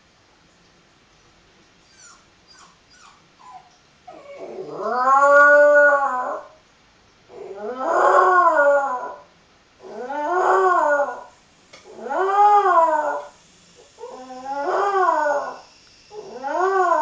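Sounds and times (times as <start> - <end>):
puppy whimpering: 1.8 - 5.1
puppy howling: 1.9 - 6.6, 7.3 - 13.4, 14.0 - 17.0.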